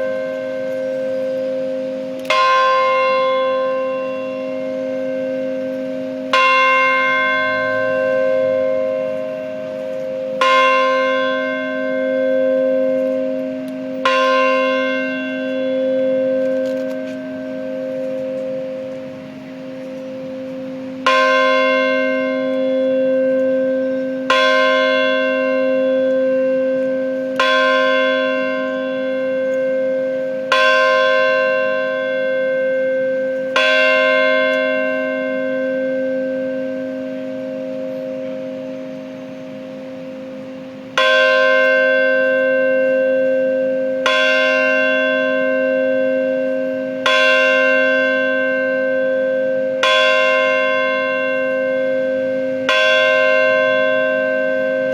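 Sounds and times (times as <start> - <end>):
church bell tolling: 0.0 - 54.9.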